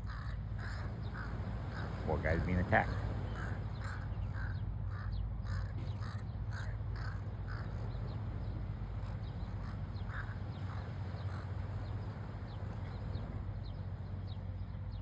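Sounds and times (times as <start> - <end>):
crows cawing: 0.0 - 7.9, 9.0 - 11.7.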